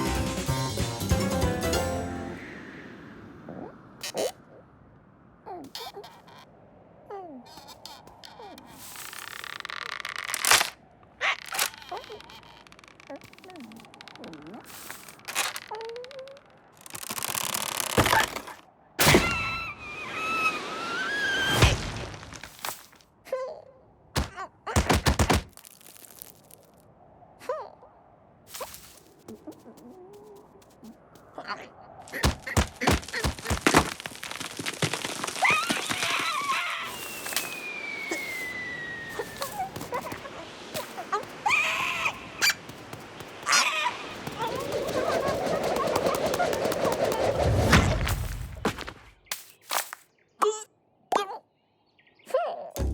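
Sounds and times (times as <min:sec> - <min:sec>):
falling whistle: 0:19.2 - 0:21.7, 0:36.8 - 0:39.5.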